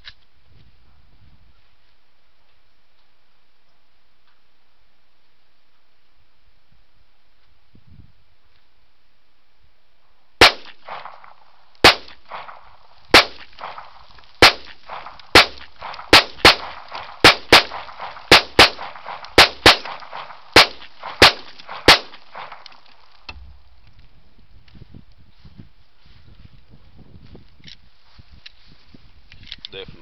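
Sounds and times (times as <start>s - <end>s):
pistol shots: 10.4s - 23.3s.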